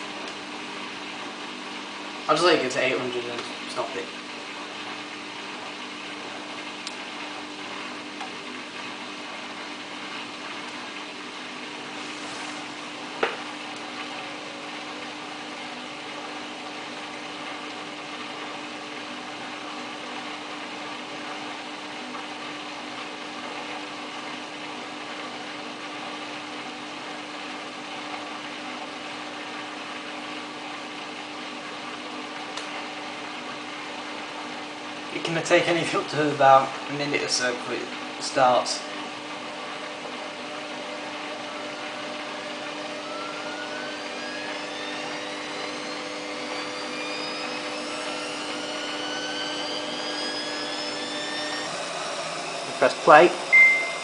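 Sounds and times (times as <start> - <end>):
washing machine humming: 0.0 - 54.0.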